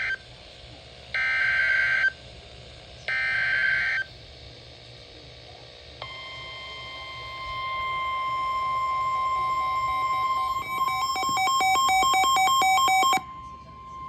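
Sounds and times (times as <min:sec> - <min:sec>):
weather radio alarm tone: 0:06.0 - 0:14.0.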